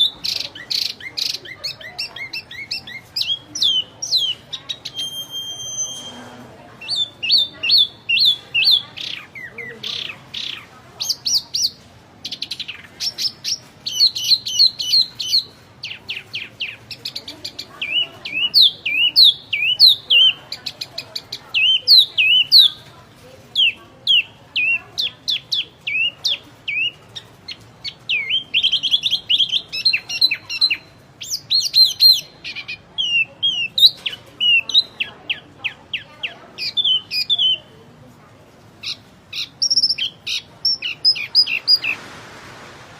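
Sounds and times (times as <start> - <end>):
songbird chirping and whistling: 0.0 - 6.2, 6.8 - 16.9, 17.8 - 20.4, 21.5 - 22.9, 23.6 - 37.7, 38.8 - 42.0.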